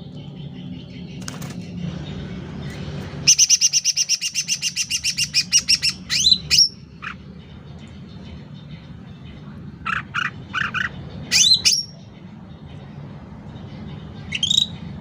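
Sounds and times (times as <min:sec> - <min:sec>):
loud sweeping bird calls: 0:00.0 - 0:07.3, 0:09.8 - 0:12.0
bird chirps: 0:00.0 - 0:12.2, 0:13.6 - 0:15.0
steady low hum: 0:00.0 - 0:15.0.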